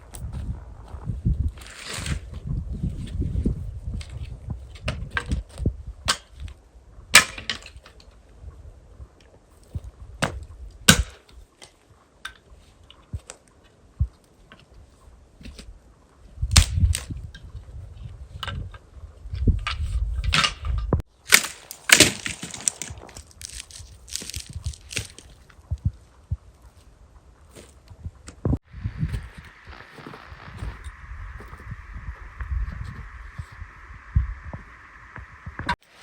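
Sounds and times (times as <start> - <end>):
sharp knocks and cracks: 7.2 - 8.0, 10.2 - 11.8, 16.5 - 17.2, 21.3 - 25.4
low rumble: 28.0 - 35.8.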